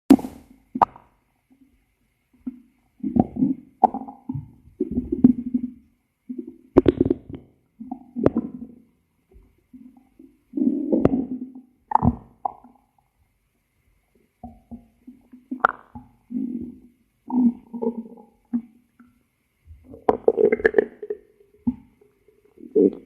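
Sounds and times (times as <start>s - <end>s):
stomach growling: 2.4s - 8.9s, 9.7s - 12.9s, 14.4s - 18.8s, 19.7s - 23.0s.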